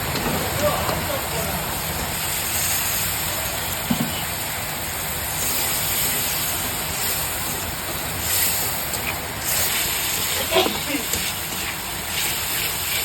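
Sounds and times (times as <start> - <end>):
curry sizzling in a pot: 0.0 - 13.0.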